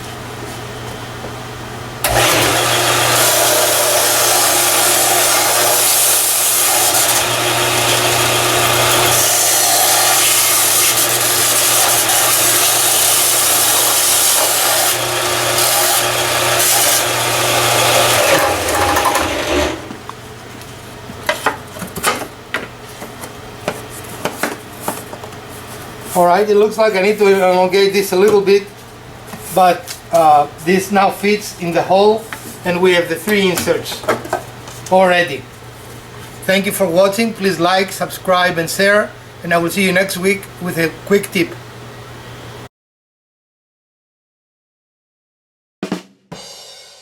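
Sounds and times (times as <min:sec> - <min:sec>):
power tool rasping wood: 0:02.0 - 0:20.0.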